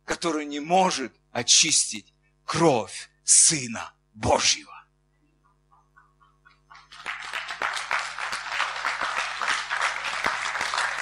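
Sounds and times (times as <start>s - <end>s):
congregation applauding: 6.7s - 11.0s.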